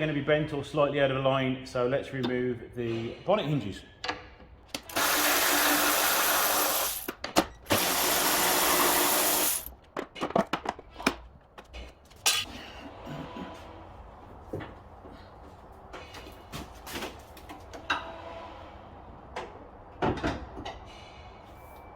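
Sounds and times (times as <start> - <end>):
power tool running: 4.8 - 7.1, 7.7 - 9.7.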